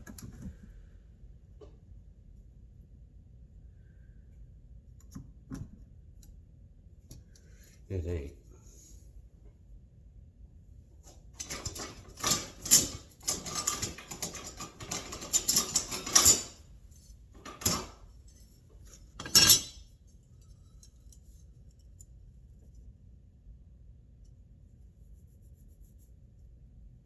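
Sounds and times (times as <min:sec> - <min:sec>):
metal tools clinking: 0:11.4 - 0:21.3.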